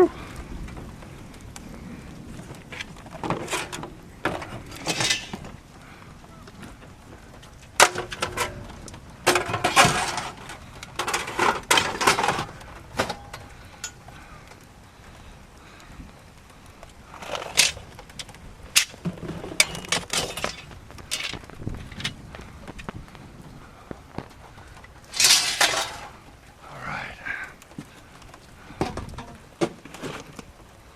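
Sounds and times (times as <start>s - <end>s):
hard objects clattering and clinking: 2.7s - 5.6s, 7.6s - 14.7s, 17.1s - 23.1s, 23.8s - 26.3s, 27.7s - 30.5s.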